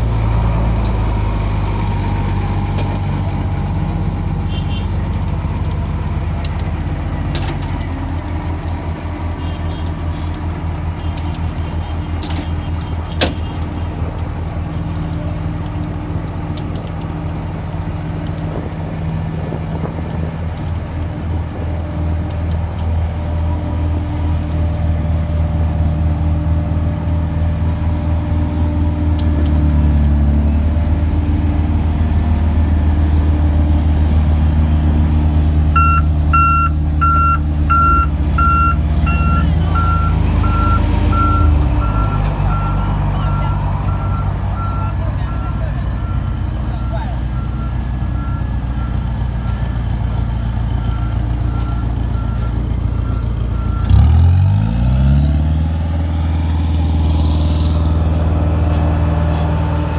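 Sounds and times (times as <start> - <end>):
heavy diesel machinery running: 0.0 - 59.9
reversing alarm beeping: 35.7 - 54.2.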